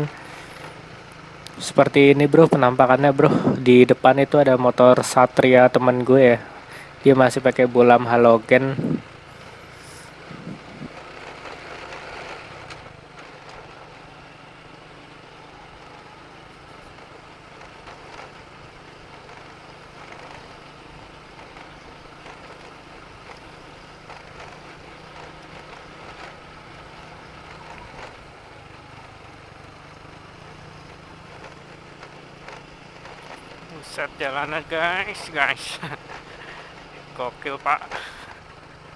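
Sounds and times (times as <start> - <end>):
motorcycle engine running: 0.0 - 38.9
road noise: 0.0 - 38.9
wind noise: 3.3 - 3.6, 8.7 - 9.1, 9.8 - 11.0.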